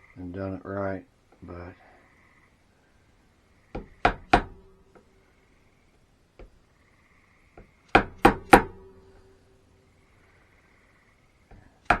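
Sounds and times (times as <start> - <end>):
chisel struck into wood: 3.8 - 5.0, 7.9 - 9.0.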